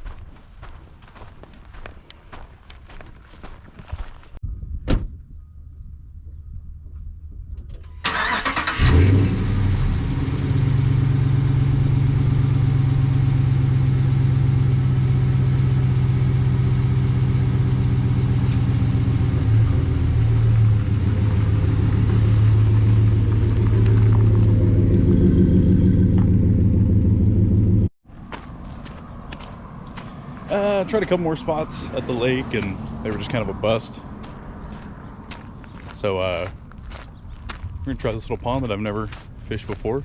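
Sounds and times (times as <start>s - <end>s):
car engine starting and running: 7.6s - 28.0s.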